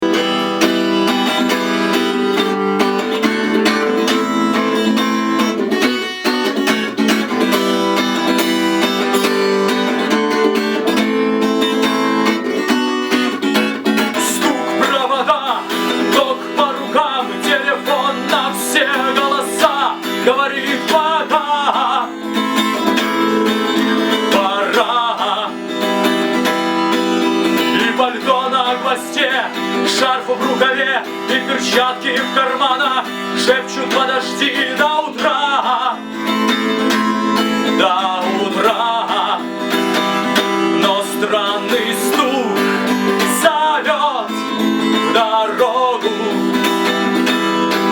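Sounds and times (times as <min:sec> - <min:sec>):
acoustic guitar strumming: 0:00.0 - 0:47.9.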